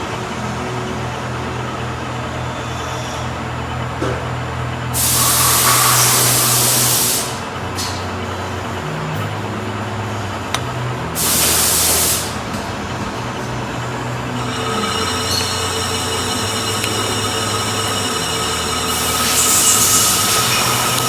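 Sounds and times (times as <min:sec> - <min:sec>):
hissing bursts of spray: 0:05.0 - 0:07.4, 0:11.2 - 0:12.4, 0:17.8 - 0:21.0
machine motor humming: 0:10.4 - 0:21.0.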